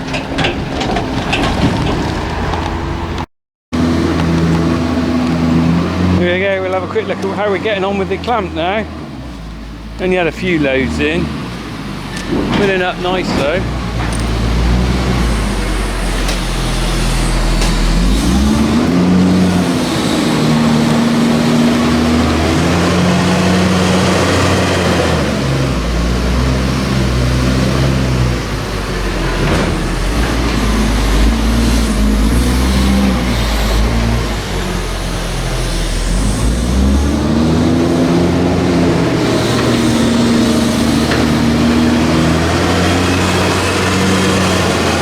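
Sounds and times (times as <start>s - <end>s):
tractor engine running: 12.0s - 45.0s.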